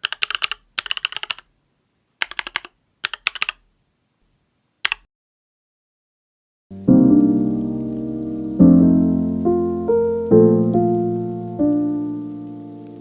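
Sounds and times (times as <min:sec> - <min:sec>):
mechanical keyboard typing: 0:00.0 - 0:01.5, 0:02.2 - 0:03.6, 0:04.8 - 0:05.1.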